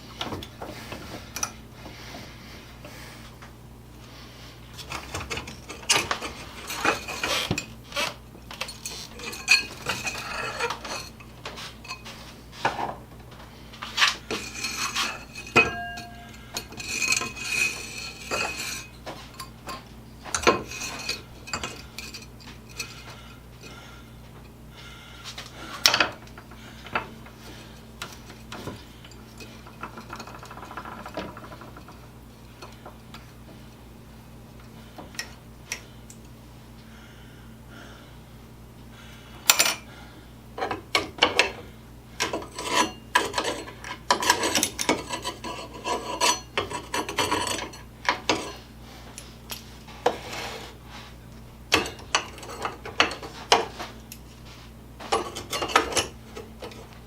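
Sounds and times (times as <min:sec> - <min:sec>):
metal tools clinking and knocking: 0:04.8 - 0:07.7, 0:08.5 - 0:12.1, 0:14.3 - 0:23.0, 0:42.2 - 0:48.6, 0:51.7 - 0:54.3, 0:55.0 - 0:56.9.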